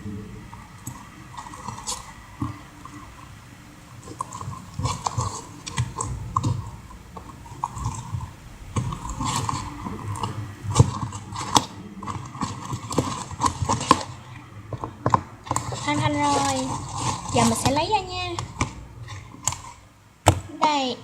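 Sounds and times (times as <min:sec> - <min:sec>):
sticky slime squishing: 0:04.0 - 0:20.5.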